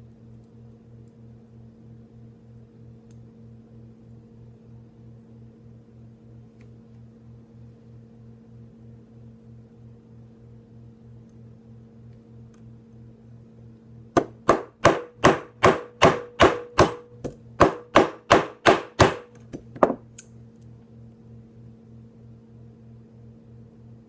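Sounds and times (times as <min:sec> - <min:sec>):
small hammer tapping a pin: 0:14.2 - 0:20.3.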